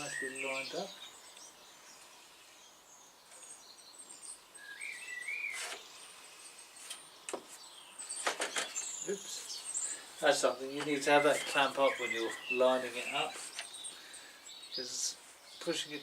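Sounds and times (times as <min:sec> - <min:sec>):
birds chirping: 0:00.0 - 0:16.0
rising and falling bird call: 0:03.0 - 0:06.0.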